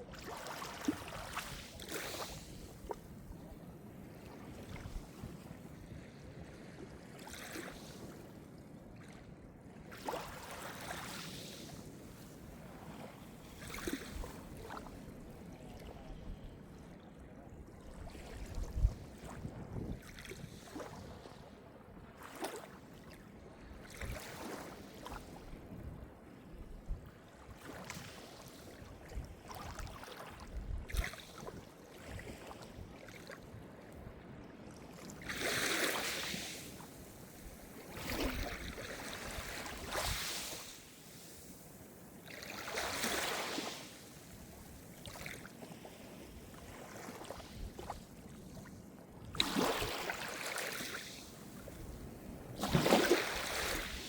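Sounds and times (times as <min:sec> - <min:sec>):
small waves breaking: 0:00.0 - 0:54.0
wind rumbling on microphone: 0:15.9 - 0:21.3, 0:29.0 - 0:32.2.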